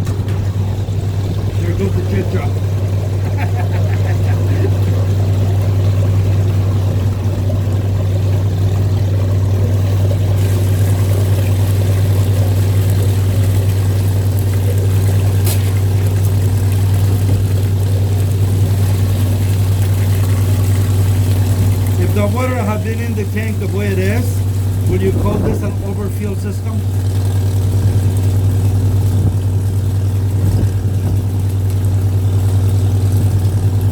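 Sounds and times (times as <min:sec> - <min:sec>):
engine and vacuum pump drone: 0:00.0 - 0:33.9
liquid rushing hiss in hose: 0:10.0 - 0:22.1.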